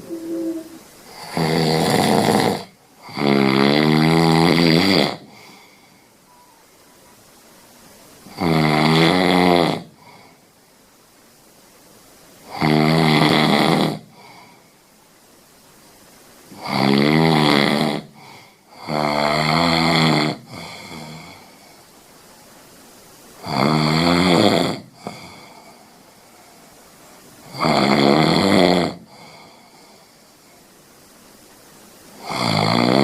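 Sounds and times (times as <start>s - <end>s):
person snoring loudly: 0.0s - 5.6s, 8.3s - 10.0s, 12.5s - 14.2s, 16.5s - 21.4s, 23.4s - 25.5s, 27.4s - 29.6s, 32.2s - 33.0s.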